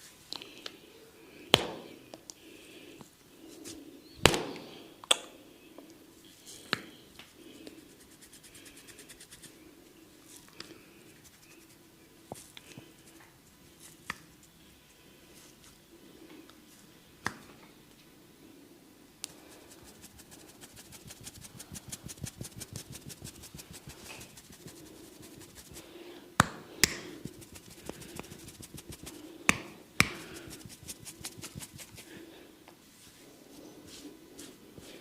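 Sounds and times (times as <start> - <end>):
hands rubbing skin and hair: 19.3 - 32.4, 33.0 - 35.0.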